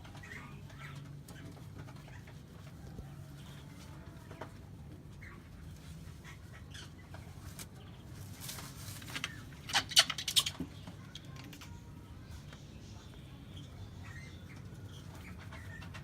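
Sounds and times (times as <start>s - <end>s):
faint low hum: 0.0s - 16.0s
hornbill bill clattering: 8.4s - 11.6s.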